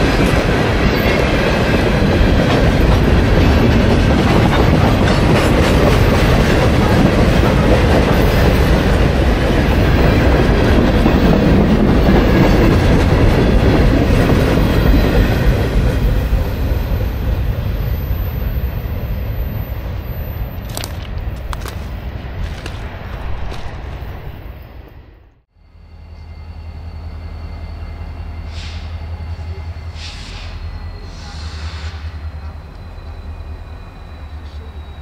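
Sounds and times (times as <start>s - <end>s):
freight train wheels clacking: 0.0s - 17.8s.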